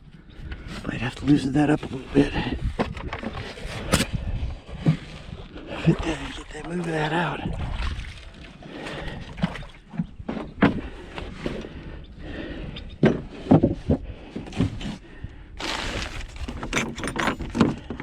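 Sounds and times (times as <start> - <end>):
rustling noise: 15.6 - 17.0.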